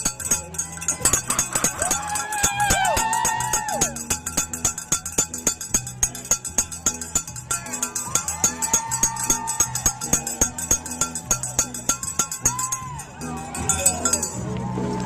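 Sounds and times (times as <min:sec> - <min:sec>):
cowbell rung rapidly: 0:00.0 - 0:14.5.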